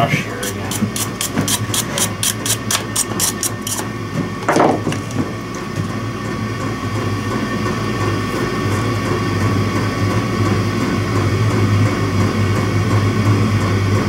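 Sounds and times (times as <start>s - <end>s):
soldering gun buzzing: 0.4s - 4.0s.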